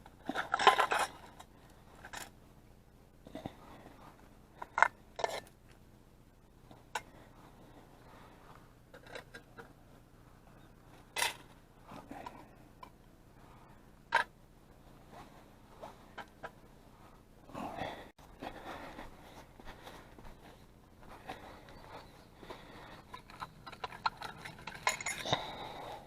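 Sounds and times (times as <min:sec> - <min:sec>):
rustling scrape: 0:14.8 - 0:16.3.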